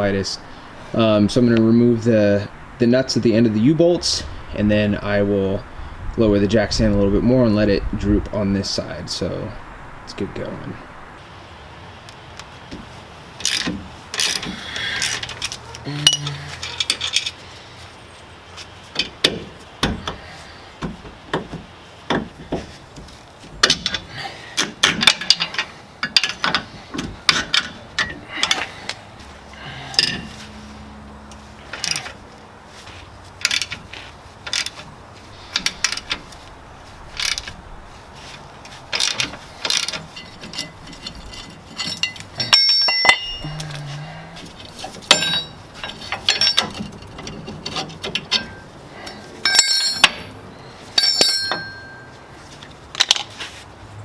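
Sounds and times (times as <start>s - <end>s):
metal tools clinking: 13.4s - 17.4s, 23.6s - 28.9s, 29.5s - 53.4s
ratchet wrench clicking: 13.4s - 17.4s, 33.4s - 33.8s, 34.4s - 34.8s, 35.5s - 36.4s, 37.2s - 37.6s, 38.9s - 40.7s.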